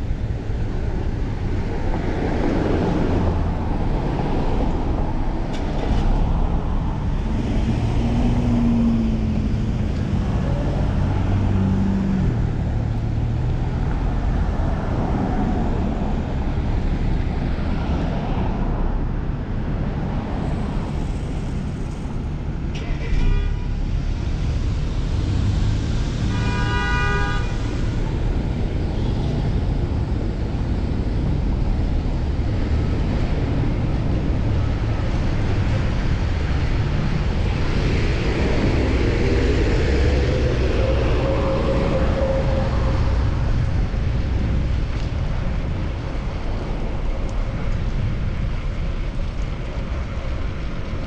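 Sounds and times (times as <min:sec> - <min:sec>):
wind rumble on microphone: 0:00.0 - 0:22.8, 0:23.6 - 0:51.0
city traffic: 0:00.0 - 0:51.0
passing vehicle engine: 0:01.1 - 0:19.0, 0:27.4 - 0:51.0
vehicle horn toot: 0:22.8 - 0:23.8, 0:26.3 - 0:27.6.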